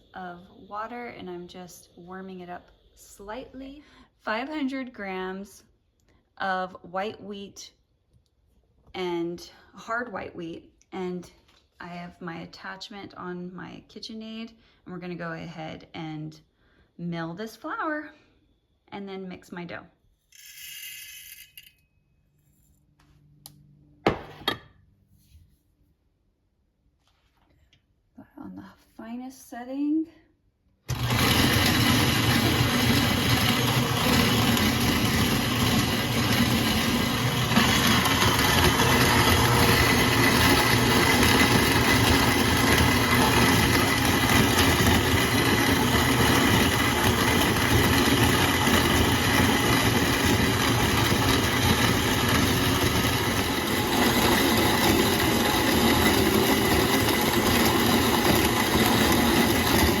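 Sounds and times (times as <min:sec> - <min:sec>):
grain mill grinding motor hum: 0:30.9 - 1:00.0.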